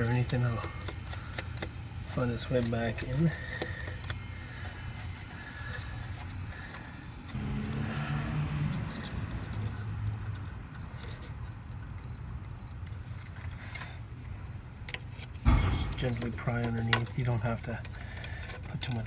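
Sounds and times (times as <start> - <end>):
car engine running: 7.4 - 11.0.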